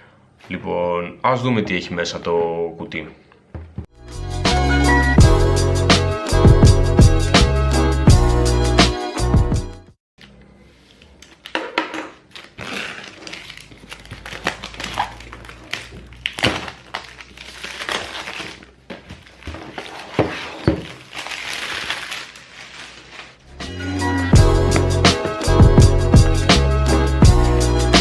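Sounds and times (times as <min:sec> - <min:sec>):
packaging crinkling and rustling: 0:10.9 - 0:23.4.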